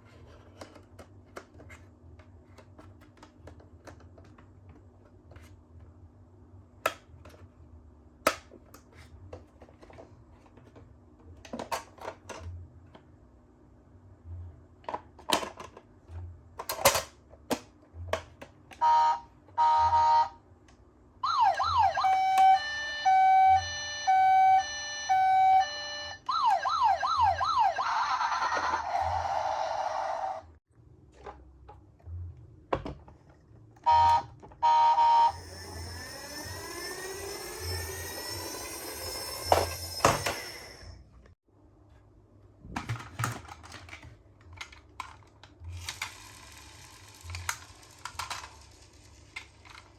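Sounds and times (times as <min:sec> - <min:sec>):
toy siren wailing: 0:18.8 - 0:20.4, 0:21.2 - 0:30.4, 0:33.9 - 0:40.8
plastic toys clicking: 0:42.9 - 0:49.9.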